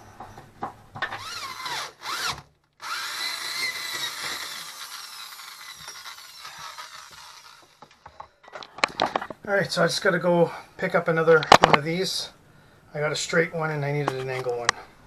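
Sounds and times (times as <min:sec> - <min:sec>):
power drill cutting fibreglass: 0:01.2 - 0:08.0.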